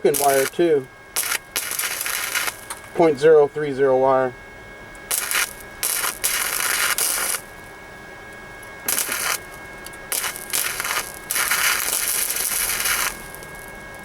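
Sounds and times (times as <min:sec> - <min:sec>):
faint steady whine: 0:00.0 - 0:14.0
welder arc crackling: 0:00.0 - 0:14.0.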